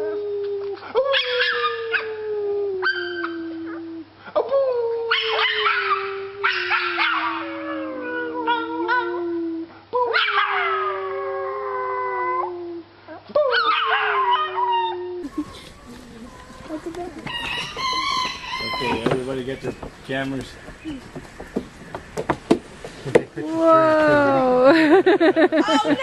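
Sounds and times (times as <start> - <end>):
dog yelps: 1.1 - 2.2, 2.8 - 3.8, 5.1 - 9.2, 10.1 - 11.0, 13.4 - 19.1
dog howling: 5.1 - 9.2, 13.5 - 19.6.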